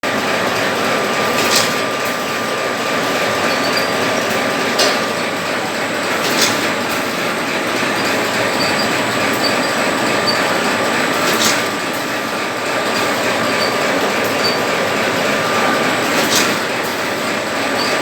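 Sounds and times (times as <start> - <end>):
packing machine clatter: 0.1 - 18.0
faint machine whine: 6.7 - 11.3.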